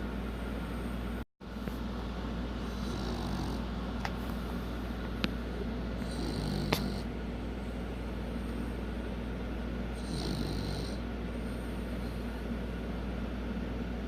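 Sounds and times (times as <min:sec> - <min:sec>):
steady low hum: 0:00.0 - 0:14.0
dog snoring: 0:02.6 - 0:03.7, 0:06.0 - 0:07.1, 0:10.0 - 0:12.3.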